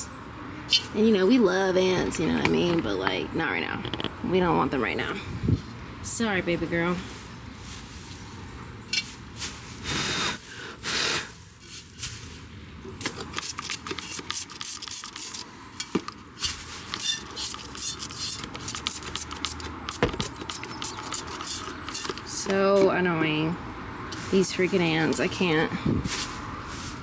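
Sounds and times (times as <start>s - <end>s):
soil scrapes and ticks: 13.0s - 23.0s.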